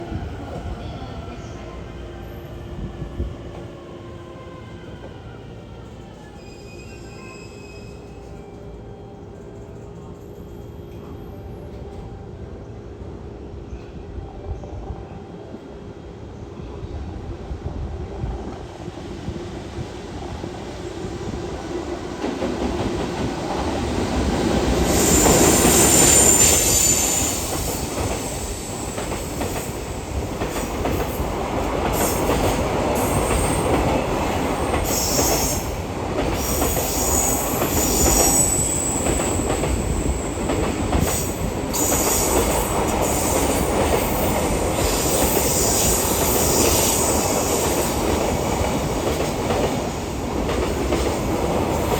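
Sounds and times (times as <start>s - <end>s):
high-pitched wheel squeals: 6.3s - 8.2s.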